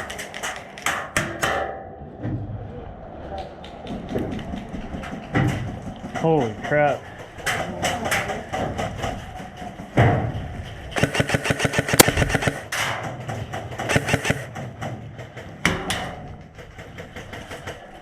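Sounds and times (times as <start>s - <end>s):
airsoft guns firing bursts: 11.0s - 12.7s, 13.8s - 14.5s.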